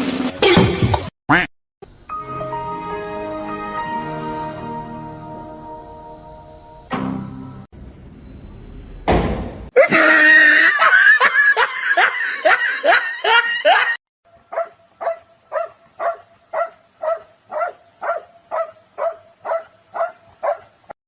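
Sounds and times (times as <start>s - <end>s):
high rising cries: 9.8s - 14.0s
dog barking: 14.5s - 20.7s.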